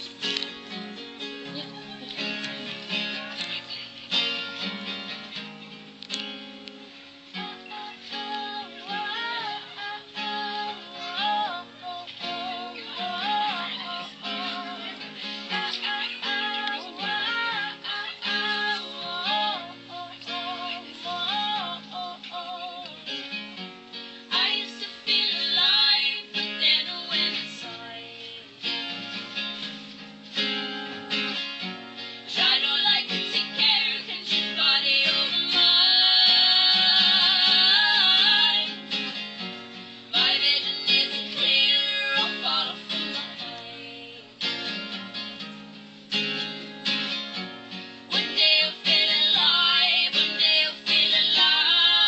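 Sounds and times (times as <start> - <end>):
acoustic guitar strumming: 0.0 - 52.0
woman singing: 1.4 - 4.6, 7.3 - 23.4, 24.2 - 29.0, 32.2 - 39.2, 40.1 - 44.8, 48.1 - 52.0.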